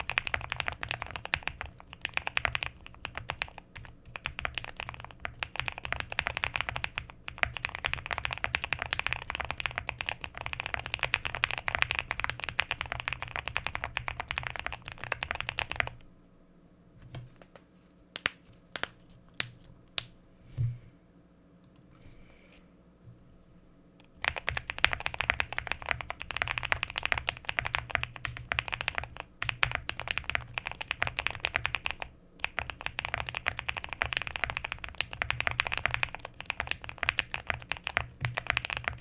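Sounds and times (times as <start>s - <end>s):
mechanical keyboard typing: 0.0s - 16.0s, 24.2s - 39.0s.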